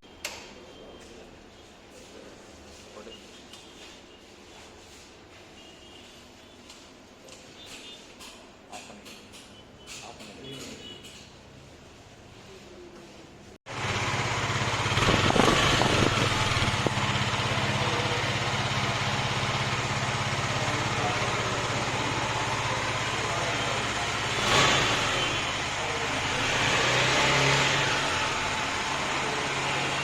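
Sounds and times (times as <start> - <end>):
motorcycle engine idling and revving: 13.7 - 30.0.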